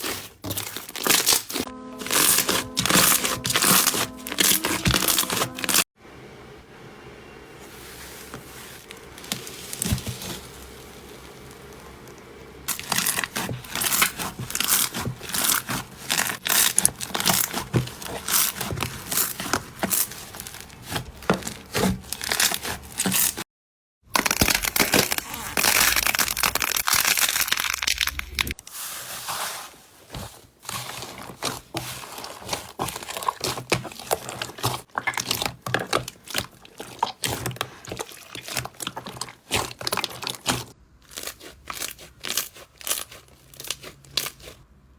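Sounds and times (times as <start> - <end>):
crunchy slime squeezed by hand: 12.7 - 23.4, 24.2 - 28.6, 31.1 - 44.6.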